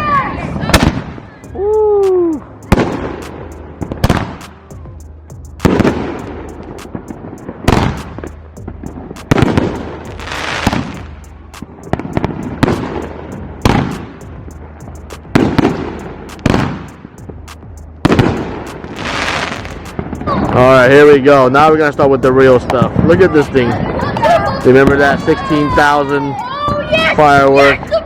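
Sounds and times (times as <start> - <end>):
firework bangs with crackle: 0.6 - 1.3, 2.1 - 4.6, 5.6 - 20.6, 22.6 - 25.5.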